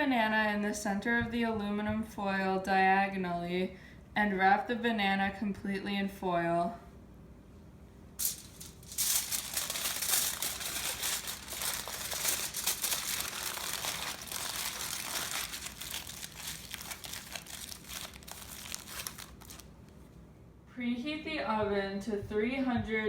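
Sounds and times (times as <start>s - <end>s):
aluminum foil crinkling: 8.2s - 20.1s.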